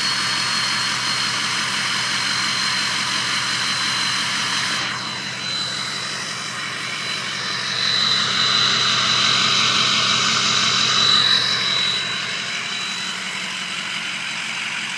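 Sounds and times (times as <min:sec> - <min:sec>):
diesel engine and exhaust: 0:00.0 - 0:14.9
turbocharger whistling: 0:00.0 - 0:14.9.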